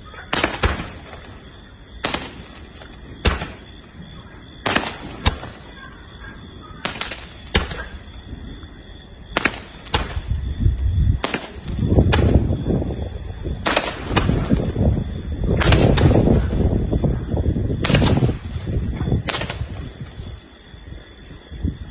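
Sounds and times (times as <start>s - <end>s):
fireworks bangs: 0.3s - 20.4s
low rumbling: 10.1s - 21.9s.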